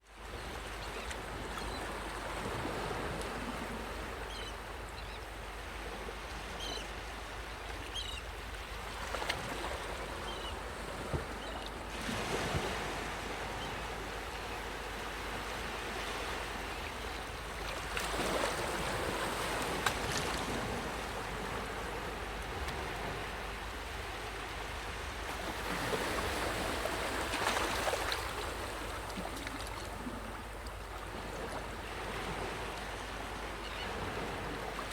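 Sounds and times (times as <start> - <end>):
sea waves washing onto beach: 17.8 - 34.9.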